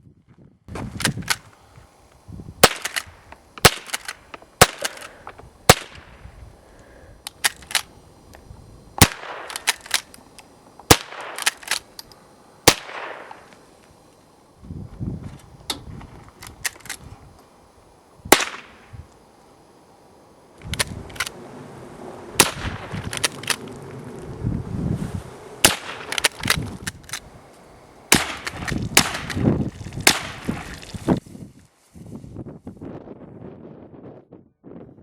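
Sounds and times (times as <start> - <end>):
rifle action clicks: 1.0 - 1.5, 2.6 - 6.0, 7.2 - 7.9, 9.0 - 13.6, 15.4 - 17.0, 20.6 - 21.3, 22.4 - 23.7, 25.7 - 27.3
rifle shots: 2.6 - 5.1, 5.7 - 6.1, 9.0 - 10.1, 10.9 - 11.8, 12.6 - 13.4, 18.3 - 18.8, 22.4 - 23.6, 25.6 - 26.6, 28.1 - 29.4, 30.0 - 30.4.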